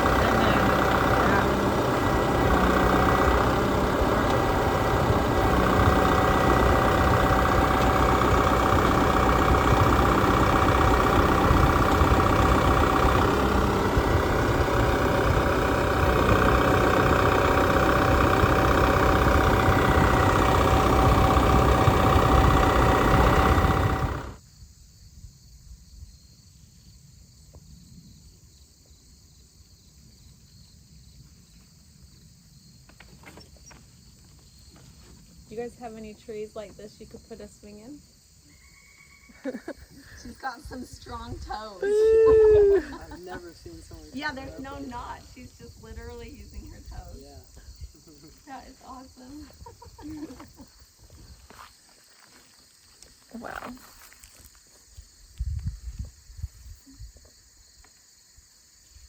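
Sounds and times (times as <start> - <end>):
tractor engine running: 0.0 - 24.4
faint crickets: 0.0 - 59.0.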